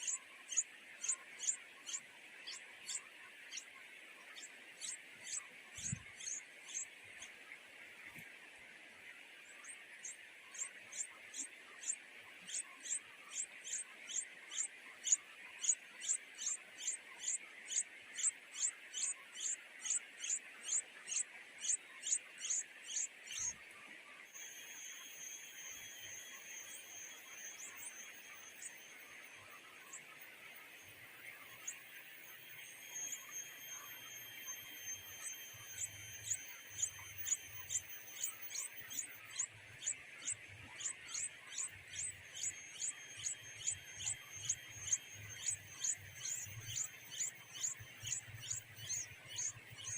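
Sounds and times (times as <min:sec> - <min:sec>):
bird chirping: 0:00.0 - 0:07.4, 0:09.5 - 0:23.6, 0:24.3 - 0:49.9
steady high-pitched tones: 0:24.3 - 0:49.9.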